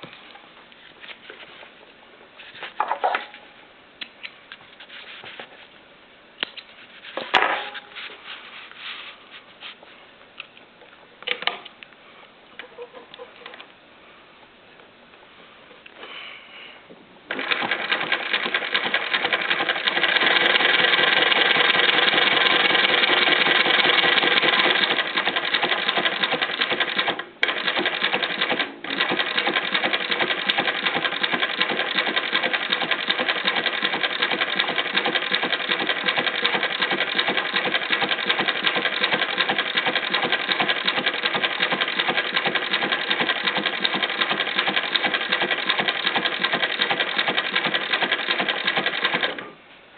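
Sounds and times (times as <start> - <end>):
sewing machine clattering: 17.3 - 49.5.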